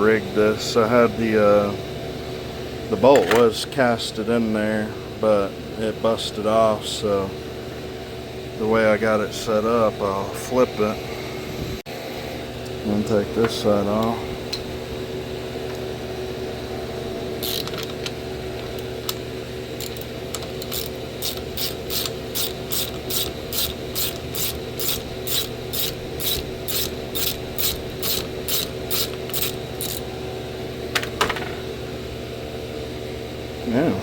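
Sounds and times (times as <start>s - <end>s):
ratchet wrench clicking: 17.4s - 17.9s, 19.8s - 30.0s.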